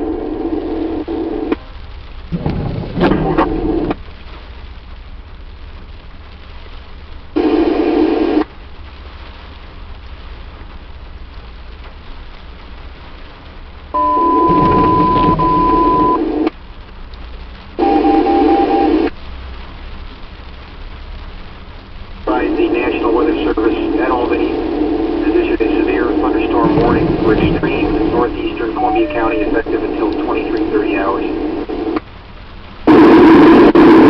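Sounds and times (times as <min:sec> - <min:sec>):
radio static transmissions: 0:00.0 - 0:01.6, 0:02.3 - 0:04.0, 0:07.4 - 0:08.5, 0:14.0 - 0:16.5, 0:17.8 - 0:19.1, 0:22.2 - 0:32.0, 0:32.9 - 0:34.0
short beeps: 0:14.0 - 0:16.2, 0:26.6 - 0:29.9
steady radio tone: 0:14.0 - 0:16.5, 0:17.8 - 0:19.1, 0:22.3 - 0:32.0, 0:32.9 - 0:34.0
faint hiss: 0:15.4 - 0:33.0.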